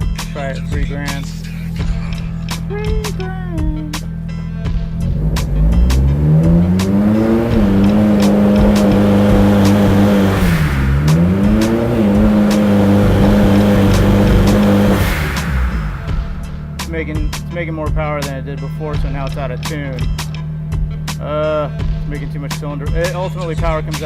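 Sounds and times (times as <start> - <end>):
car engine revving under load: 3.9 - 17.6.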